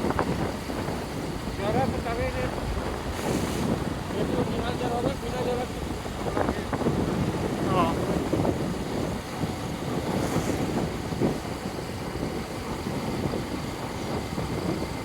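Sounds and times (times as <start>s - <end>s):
wind and road noise: 0.0s - 15.0s.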